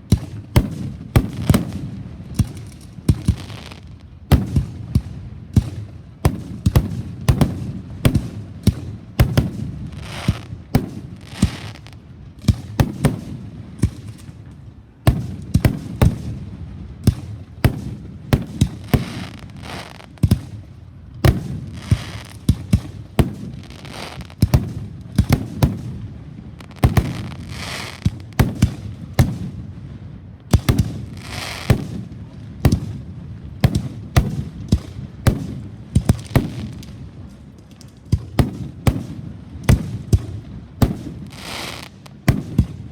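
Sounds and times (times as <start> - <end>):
fireworks bangs: 0.0 - 42.9
fireworks hiss: 2.6 - 4.0, 9.9 - 12.0, 18.6 - 20.4, 21.5 - 24.5, 26.6 - 28.4, 30.8 - 31.8, 41.2 - 42.2.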